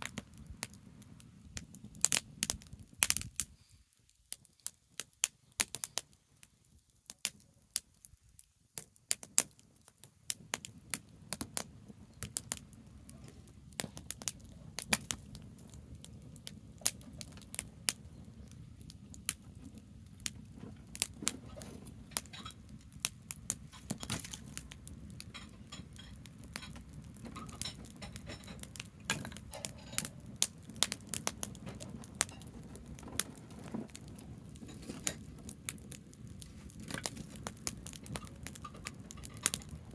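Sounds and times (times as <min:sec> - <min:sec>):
campfire crackling and popping: 0:00.0 - 0:39.9.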